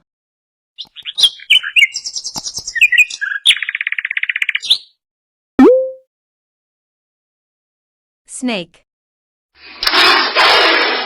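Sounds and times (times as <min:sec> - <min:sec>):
nightingale singing: 0:00.8 - 0:04.9.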